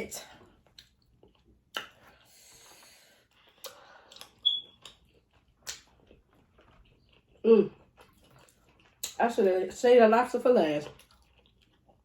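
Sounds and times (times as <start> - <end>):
mouth clicks and smacks: 0.7 - 2.2, 5.6 - 6.0.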